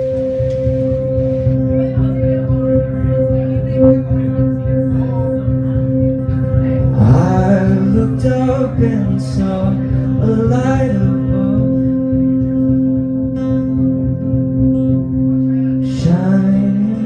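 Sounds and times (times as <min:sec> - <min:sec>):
rock band sustained chord: 0:00.0 - 0:16.2
man singing: 0:02.0 - 0:14.1, 0:14.9 - 0:17.0.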